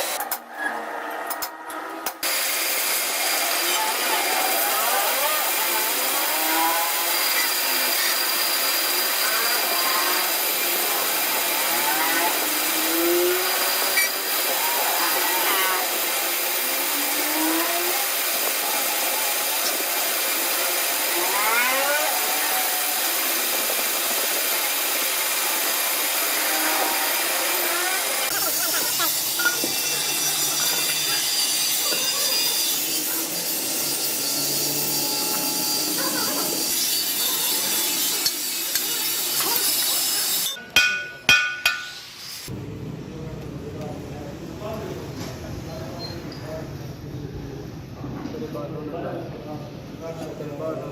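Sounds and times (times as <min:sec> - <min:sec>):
power tool running: 0:00.0 - 0:00.4, 0:01.4 - 0:40.6.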